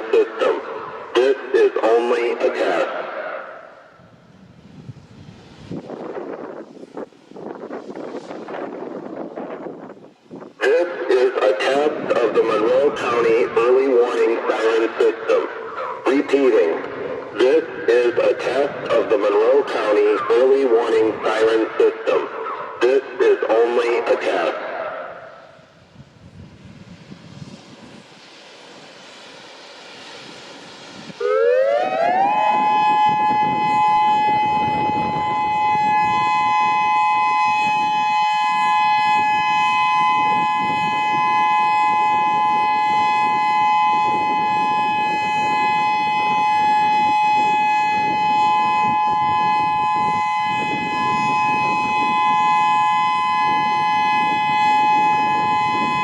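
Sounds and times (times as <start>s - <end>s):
warning siren: 0.0s - 56.0s
faint hiss: 25.2s - 31.4s.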